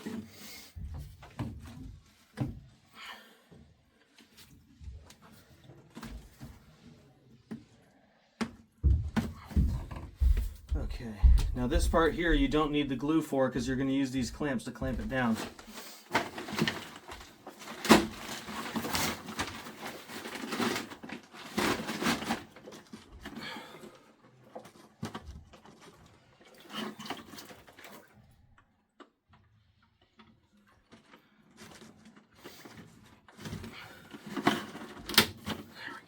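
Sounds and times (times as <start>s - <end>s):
plastic pipe knocking and scraping: 0.8s - 2.8s, 8.4s - 13.0s.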